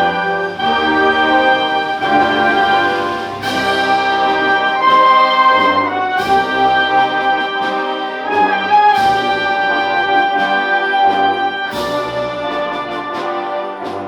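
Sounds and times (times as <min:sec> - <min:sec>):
percussion crash: 0:00.0 - 0:07.8
brass sustained chords: 0:00.0 - 0:14.0
concert band playing a slow march: 0:00.0 - 0:14.0.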